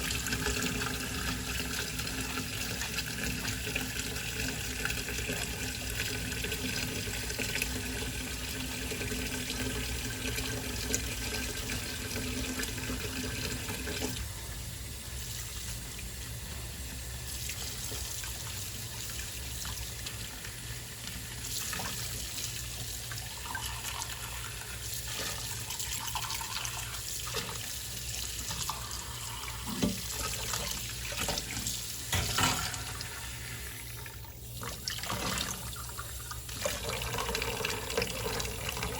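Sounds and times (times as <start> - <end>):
tap water running into sink: 0.0 - 38.9.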